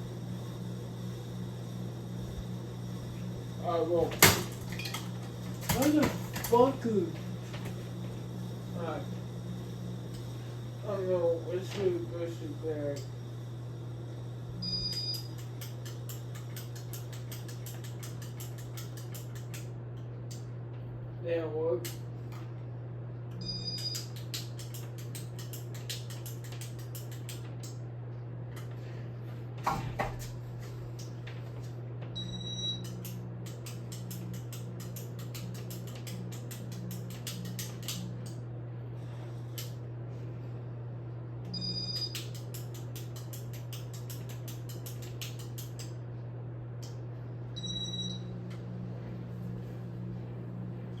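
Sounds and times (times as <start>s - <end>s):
ceiling fan motor hum: 0.0s - 51.0s
quick repeated clicking: 42.0s - 45.9s.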